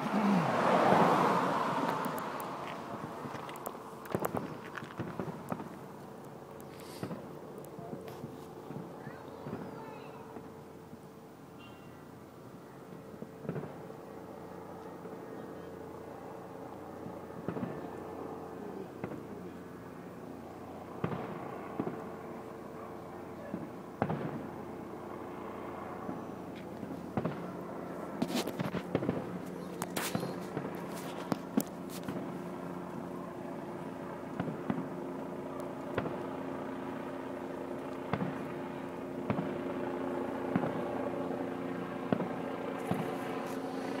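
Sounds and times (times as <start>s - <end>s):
steady background hum: 0.0s - 44.0s
fireworks bangs: 6.9s - 7.3s, 17.4s - 17.9s, 21.0s - 22.0s, 23.5s - 24.5s, 27.1s - 27.5s, 28.2s - 30.8s, 34.4s - 34.9s, 42.1s - 43.2s.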